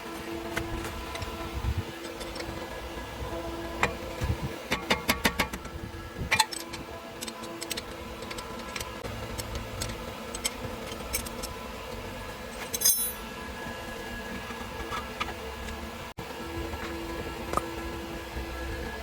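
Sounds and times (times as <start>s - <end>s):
metallic clicks of handled tools: 12.6s - 13.2s.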